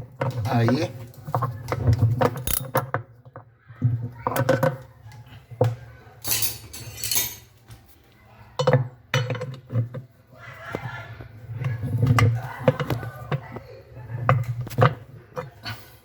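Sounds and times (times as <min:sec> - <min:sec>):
metal clinks and knocks: 0:02.2 - 0:03.0.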